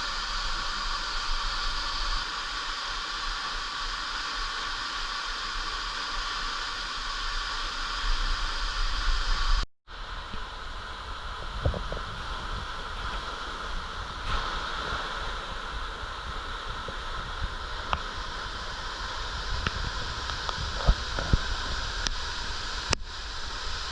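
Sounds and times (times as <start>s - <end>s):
rushing water: 0.0s - 23.9s.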